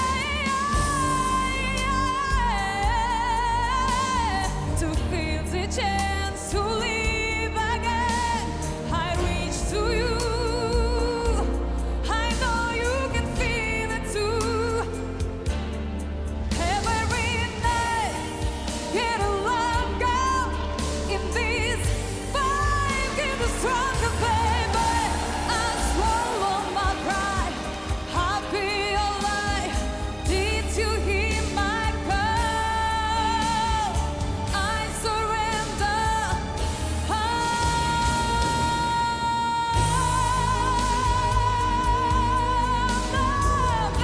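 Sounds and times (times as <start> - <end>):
woman singing with vibrato: 0.0 - 15.5, 16.6 - 44.0
steady bass line: 0.0 - 44.0
band accompaniment: 15.2 - 44.0.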